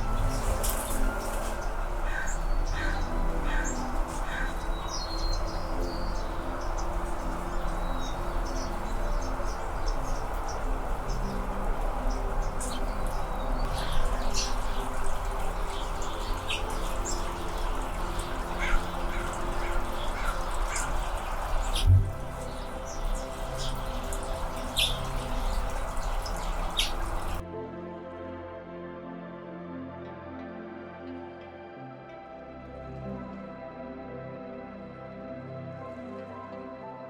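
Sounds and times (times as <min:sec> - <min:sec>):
hummingbird chip calls: 0:00.0 - 0:27.4
steady background hiss: 0:00.0 - 0:27.4.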